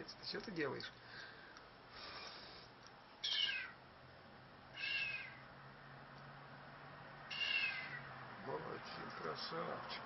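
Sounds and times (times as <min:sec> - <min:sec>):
bird giving plaintive calls: 0:03.2 - 0:03.8, 0:04.7 - 0:05.5, 0:07.3 - 0:08.1.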